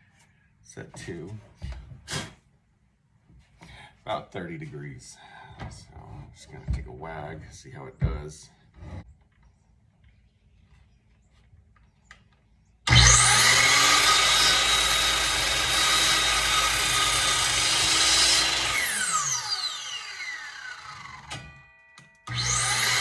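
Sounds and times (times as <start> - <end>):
miter saw cutting wood: 12.9 - 21.5, 22.3 - 23.0
saw motor winding down whine: 12.9 - 21.5, 22.3 - 23.0.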